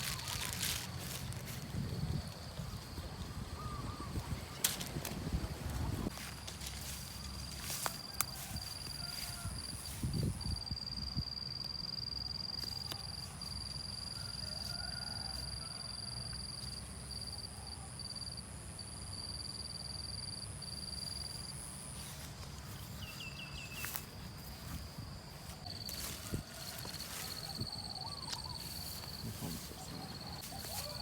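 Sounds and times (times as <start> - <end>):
insects trilling: 0.0 - 31.0.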